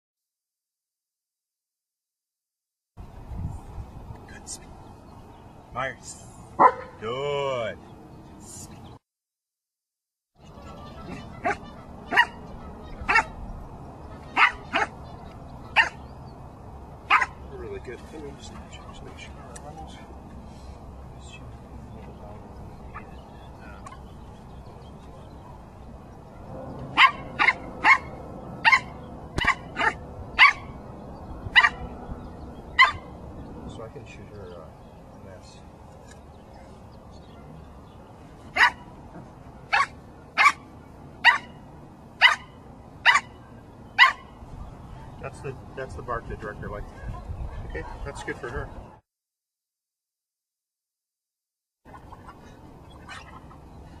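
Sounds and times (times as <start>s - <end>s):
distant highway traffic: 3.0s - 9.0s, 10.4s - 49.0s, 51.9s - 54.0s
dog barking: 6.6s - 7.0s, 11.4s - 13.4s, 14.3s - 15.0s, 15.7s - 16.0s, 17.1s - 17.4s, 26.4s - 30.8s, 31.5s - 31.9s, 32.7s - 33.1s, 38.5s - 38.8s, 39.7s - 40.6s, 41.2s - 41.6s, 42.2s - 43.4s, 44.0s - 44.3s.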